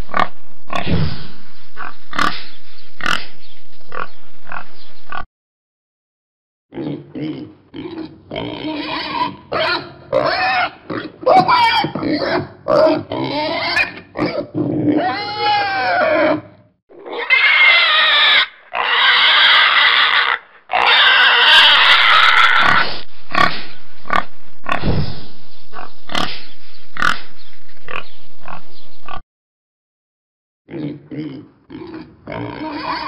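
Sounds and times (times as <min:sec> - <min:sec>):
pig grunting: 0:00.1 - 0:05.2, 0:06.7 - 0:27.3, 0:30.7 - 0:33.0
pig squealing: 0:06.7 - 0:25.0, 0:25.8 - 0:27.3, 0:27.9 - 0:28.6, 0:30.7 - 0:33.0.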